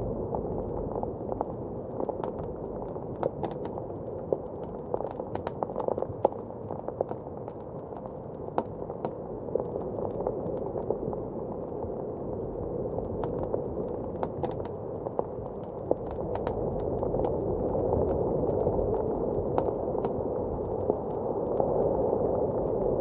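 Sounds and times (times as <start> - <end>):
wood fire crackling: 0.5 - 23.0.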